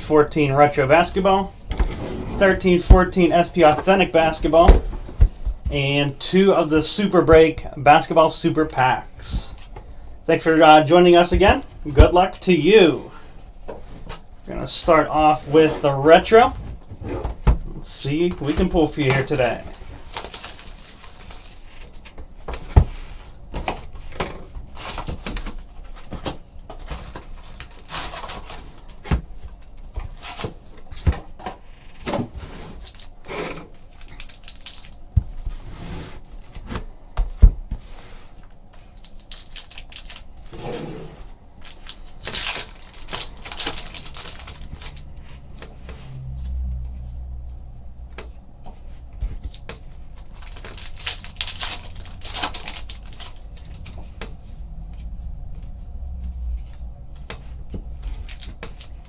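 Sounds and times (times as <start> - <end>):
foil wrappers rustling and tearing: 18.2 - 22.0, 27.1 - 29.0, 32.8 - 35.1, 38.9 - 40.6, 41.5 - 45.2, 49.3 - 54.2, 57.9 - 59.0.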